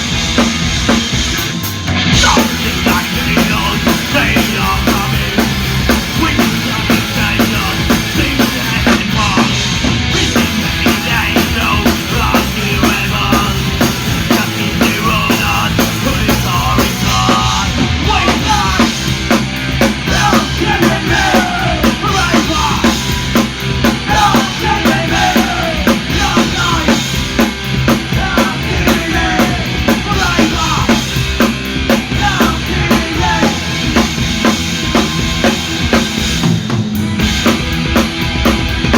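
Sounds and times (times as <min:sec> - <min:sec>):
drum kit fast steady beat: 0:00.0 - 0:38.9
loud punk rock band playing: 0:00.0 - 0:38.9.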